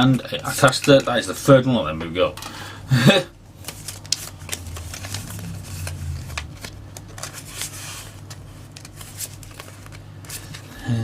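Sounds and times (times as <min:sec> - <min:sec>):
low hum: 0:03.4 - 0:08.4
cards being shuffled: 0:03.6 - 0:10.6.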